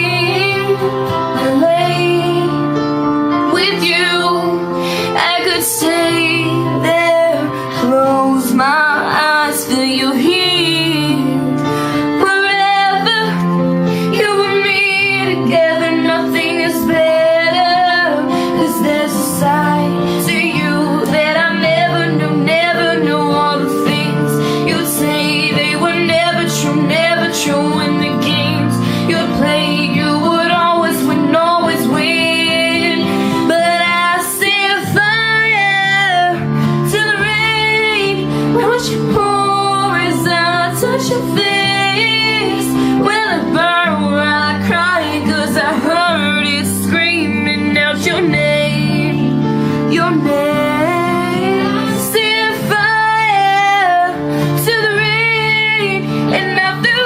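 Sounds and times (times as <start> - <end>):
instrumental backing: 0.0 - 57.0
woman singing pop ballad: 0.0 - 57.0.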